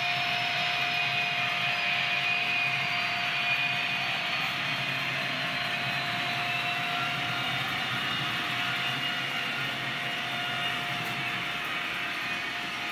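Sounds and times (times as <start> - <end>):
diesel engine sound on small loudspeaker: 3.9 - 12.9.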